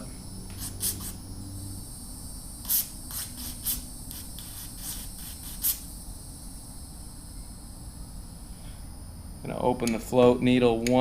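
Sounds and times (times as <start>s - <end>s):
aerosol spray hissing bursts: 0.4s - 6.6s.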